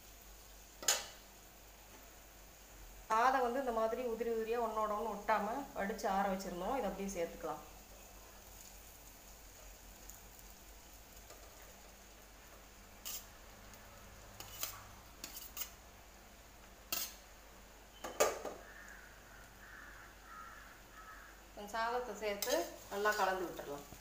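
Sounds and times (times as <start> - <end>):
spoon scraping a pan: 0.8 - 1.2, 11.2 - 13.5, 14.2 - 15.8, 16.8 - 17.3, 22.3 - 23.6.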